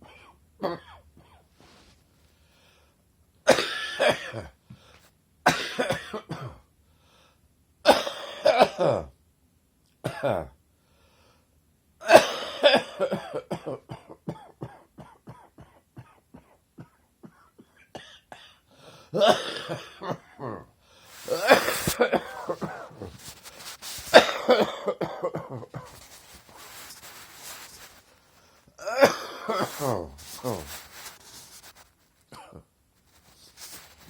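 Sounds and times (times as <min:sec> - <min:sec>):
person coughing: 0:03.5 - 0:04.6, 0:05.5 - 0:06.6, 0:07.9 - 0:09.1, 0:10.1 - 0:10.5, 0:12.0 - 0:18.6, 0:19.2 - 0:27.9, 0:28.8 - 0:31.1, 0:32.3 - 0:32.7.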